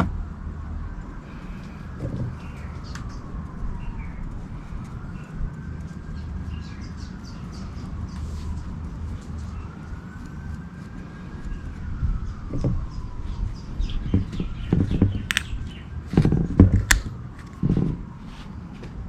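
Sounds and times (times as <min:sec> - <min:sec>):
knocks and clicks of tools: 0:14.2 - 0:15.5.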